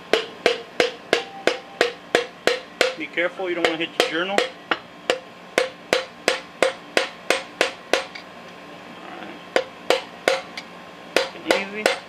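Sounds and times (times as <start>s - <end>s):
wooden hammer tapping piston: 11.2s - 12.0s.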